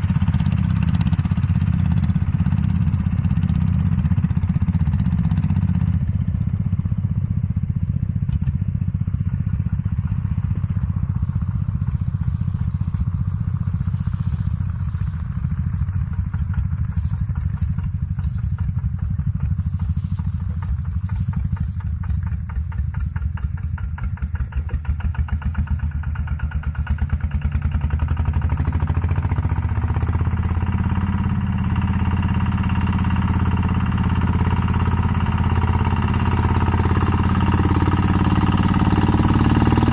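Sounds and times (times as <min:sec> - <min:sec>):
farm machinery engine running: 0:00.0 - 0:39.9.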